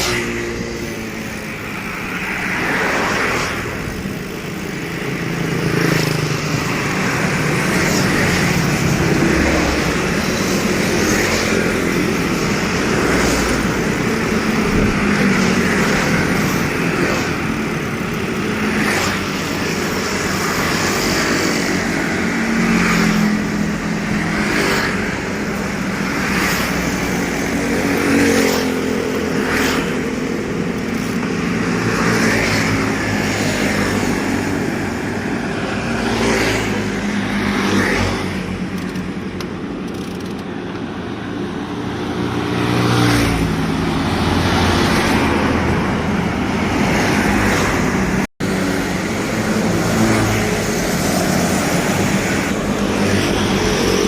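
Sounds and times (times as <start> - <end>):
vehicles passing on road: 0.0 - 54.0.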